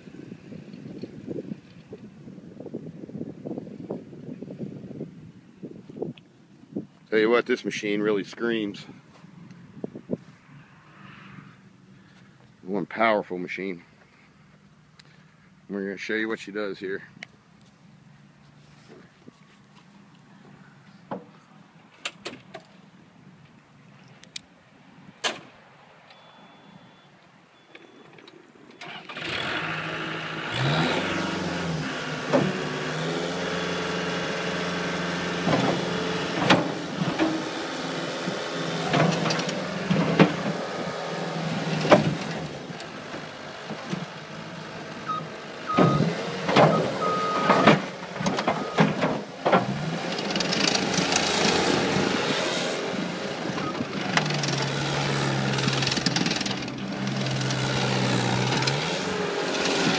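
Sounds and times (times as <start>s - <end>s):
diesel engine running and revving: 28.8s - 59.9s.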